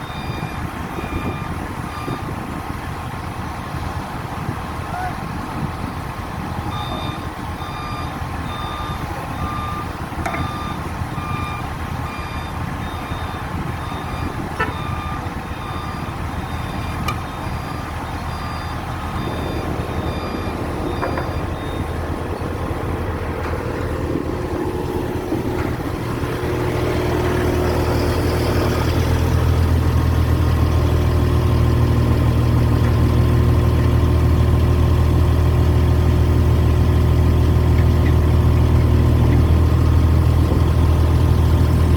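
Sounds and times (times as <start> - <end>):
reversing alarm beeping: 0.0 - 2.4, 6.6 - 23.0
crane engine running: 0.0 - 41.9.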